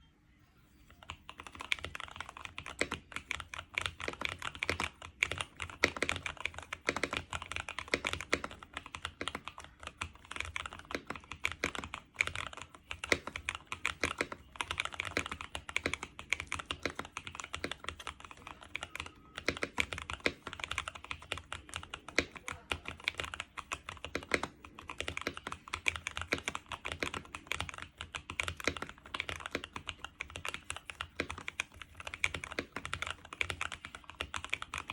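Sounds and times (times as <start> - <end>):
mechanical keyboard typing: 0.9 - 34.9.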